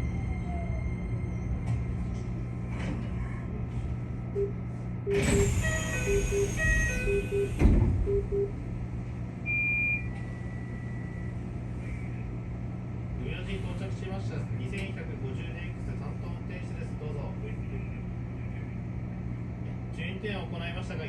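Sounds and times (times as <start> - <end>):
electric train humming: 5.1 - 9.5.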